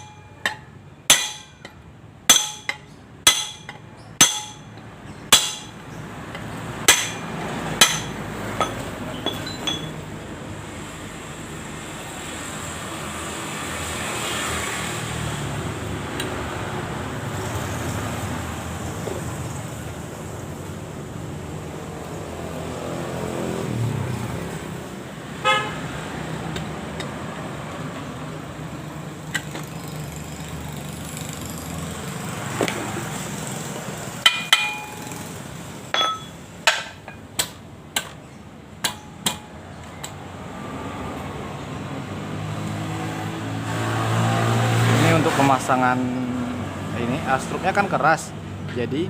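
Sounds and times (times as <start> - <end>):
passing traffic: 0.0 - 49.0
metal parts clinking and knocking: 7.8 - 10.0, 35.9 - 37.2.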